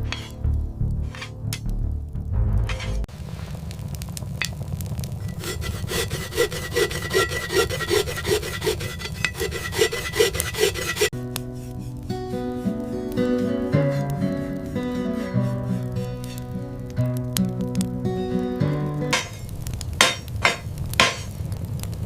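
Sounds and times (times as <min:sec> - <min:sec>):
hand tool rasping: 0:00.0 - 0:00.3, 0:01.1 - 0:01.3, 0:05.2 - 0:16.6, 0:19.1 - 0:19.4.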